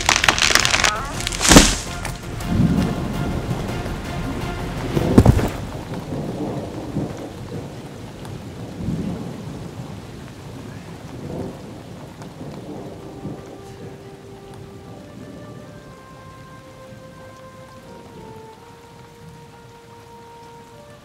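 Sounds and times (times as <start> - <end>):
thunder crack and rumbling: 0.0 - 15.8
steady rainfall: 0.0 - 21.0.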